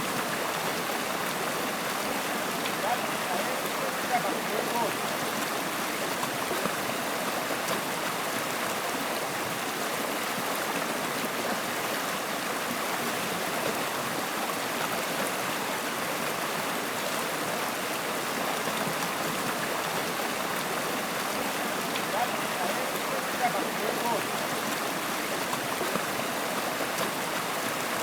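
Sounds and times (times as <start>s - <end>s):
flowing water: 0.0s - 28.0s.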